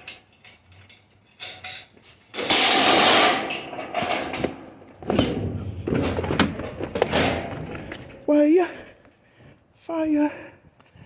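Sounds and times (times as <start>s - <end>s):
scrap metal clinks and knocks: 0.0s - 4.9s.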